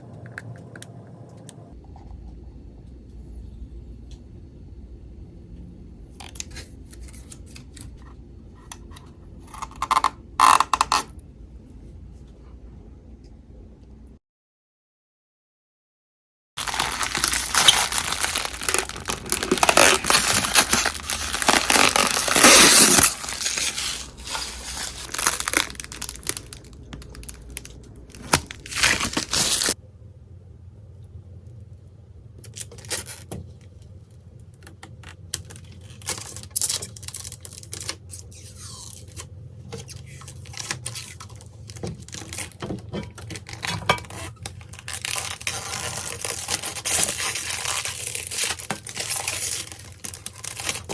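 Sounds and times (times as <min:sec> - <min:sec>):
material crinkling and tearing: 0:09.5 - 0:11.1, 0:16.6 - 0:29.8, 0:34.5 - 0:50.9.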